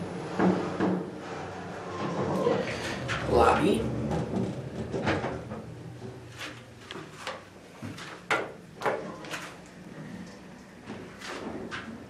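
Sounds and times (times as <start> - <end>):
elevator knocks and clunks: 2.5 - 6.2.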